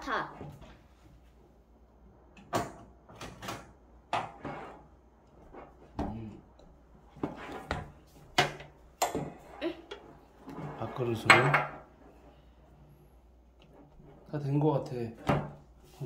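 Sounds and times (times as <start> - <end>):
bowls and utensils knocking: 11.1 - 11.9.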